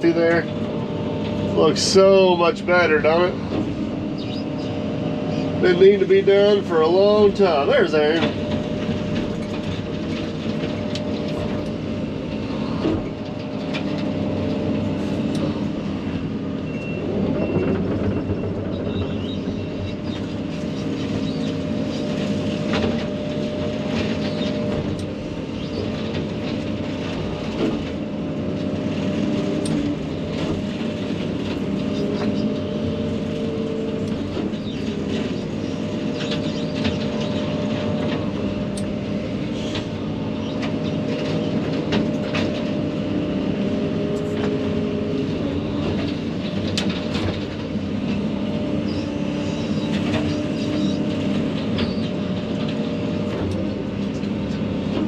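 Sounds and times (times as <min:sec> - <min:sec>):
excavator engine and hydraulic drone: 0:00.0 - 0:55.0.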